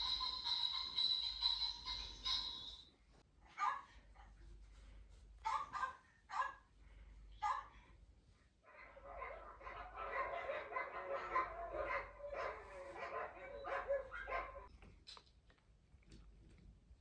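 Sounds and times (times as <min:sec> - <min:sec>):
dog barking rapidly: 0:03.6 - 0:03.9, 0:05.4 - 0:06.6, 0:07.4 - 0:07.7, 0:08.7 - 0:14.7.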